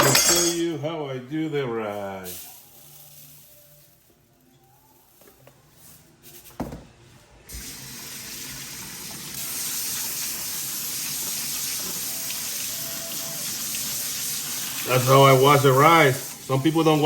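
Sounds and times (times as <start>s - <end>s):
tap water running into pot: 7.5s - 17.0s.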